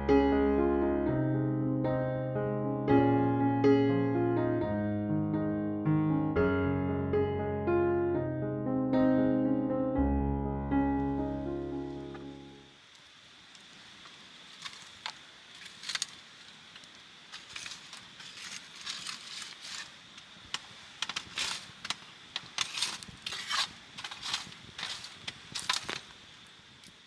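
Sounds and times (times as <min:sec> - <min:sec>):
faint steady high whine: 0:10.5 - 0:27.0
camping gear clinking and rustling: 0:13.9 - 0:27.0.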